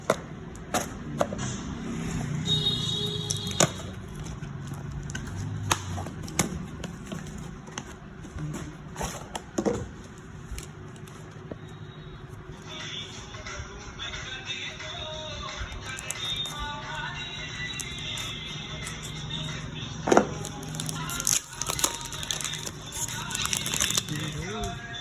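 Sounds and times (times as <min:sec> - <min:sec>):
faint background music: 0:03.3 - 0:25.0
packaging taps and clicks: 0:15.8 - 0:16.6, 0:20.1 - 0:24.8.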